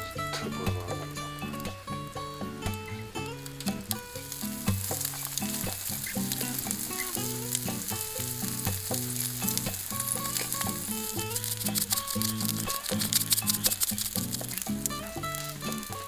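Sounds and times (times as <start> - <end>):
background music with melody: 0.0 - 16.0
meat sizzling as it fries: 0.1 - 16.0.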